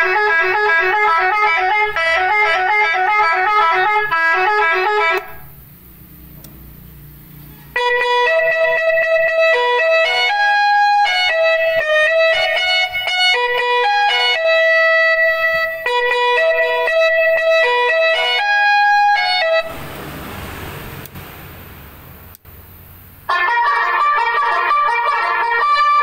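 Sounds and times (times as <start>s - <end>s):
electronic horn melody: 0.0s - 5.7s, 7.4s - 19.9s, 23.3s - 26.0s
steady low noise: 18.9s - 23.3s.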